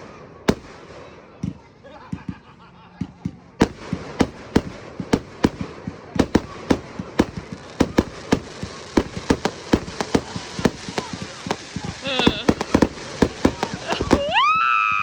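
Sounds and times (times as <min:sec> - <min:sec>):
fireworks bangs: 0:00.0 - 0:02.5, 0:03.1 - 0:15.0
steady hiss: 0:06.3 - 0:14.4.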